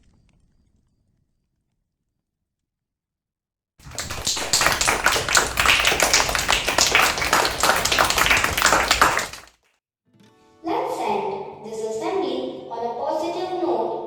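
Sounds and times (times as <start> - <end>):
group applauding: 3.8 - 9.5.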